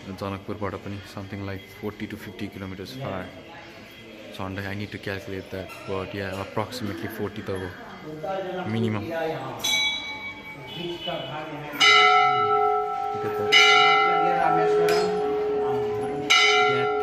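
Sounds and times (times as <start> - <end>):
metal temple bells struck: 9.6 - 10.9, 11.7 - 17.0.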